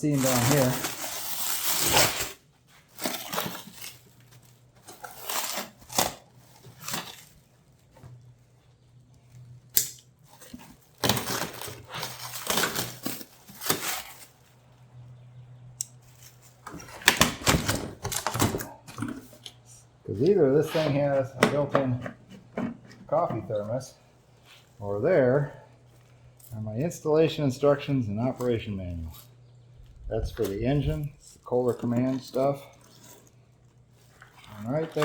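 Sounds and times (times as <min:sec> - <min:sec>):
packing material rustling: 0:00.0 - 0:15.1, 0:15.9 - 0:19.4, 0:28.3 - 0:35.0.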